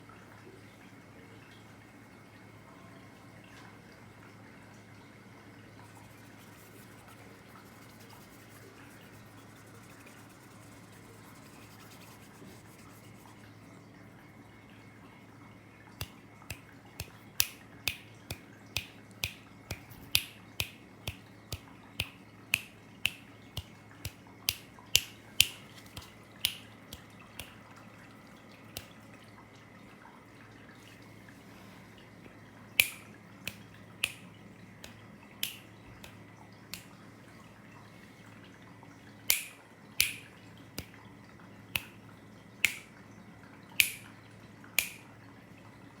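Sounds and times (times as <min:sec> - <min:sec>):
person making clicking sounds: 0:05.9 - 0:13.3, 0:16.0 - 0:27.6, 0:28.7 - 0:29.0, 0:32.8 - 0:34.2, 0:34.8 - 0:36.9, 0:39.3 - 0:41.0, 0:41.7 - 0:42.0, 0:42.6 - 0:42.9, 0:43.8 - 0:44.1, 0:44.8 - 0:45.1.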